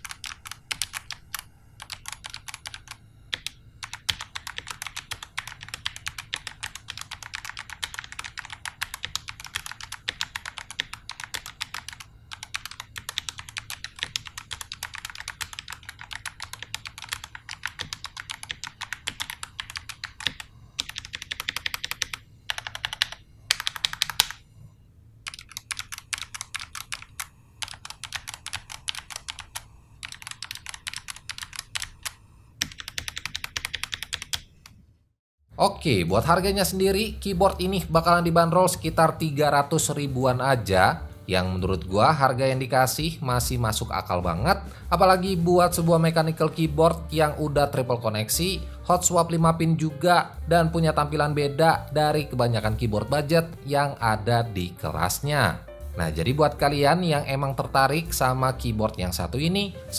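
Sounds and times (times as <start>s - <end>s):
mechanical keyboard typing: 0.0s - 24.4s, 25.2s - 34.8s.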